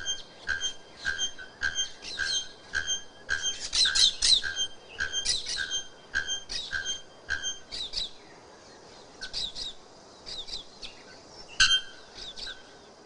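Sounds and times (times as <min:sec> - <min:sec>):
bellbird ringing calls: 0:00.0 - 0:07.6
bird chirps: 0:00.0 - 0:12.9.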